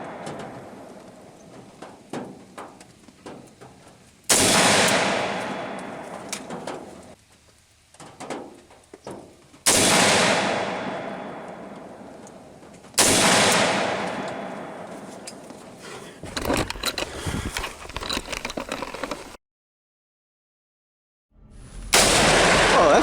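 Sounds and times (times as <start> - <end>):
rifle shots: 4.3 - 6.8, 9.7 - 12.2, 13.0 - 15.0, 22.0 - 23.0.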